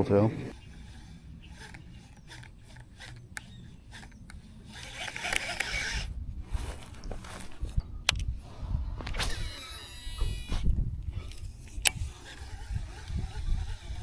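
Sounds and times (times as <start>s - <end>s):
fishing line zipping whir: 0.5s - 7.8s, 8.4s - 14.0s
fishing reel clicks: 0.6s - 6.1s, 11.2s - 14.0s.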